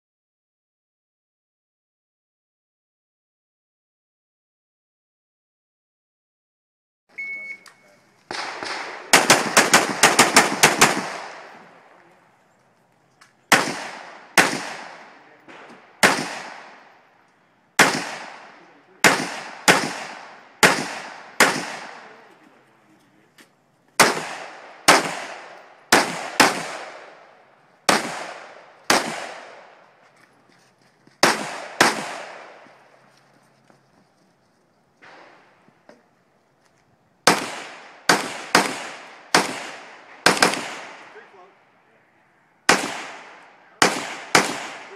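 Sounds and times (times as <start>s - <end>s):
rifle shots with echo: 8.3s - 12.0s, 13.5s - 17.1s, 17.8s - 22.3s, 24.0s - 29.8s, 31.2s - 32.8s, 37.2s - 41.4s, 42.6s - 44.9s.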